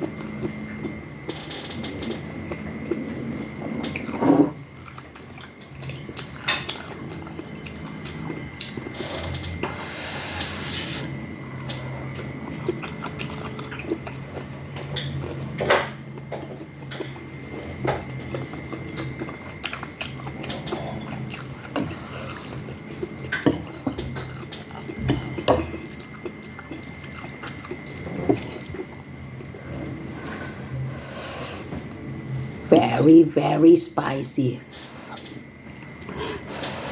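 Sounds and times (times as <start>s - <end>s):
slurping noodle soup: 3.9s - 11.2s.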